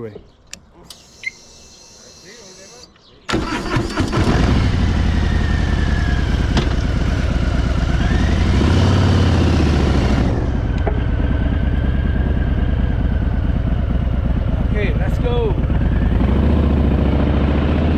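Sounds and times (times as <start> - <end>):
motorcycle engine idling: 4.8 - 8.3, 10.4 - 17.0.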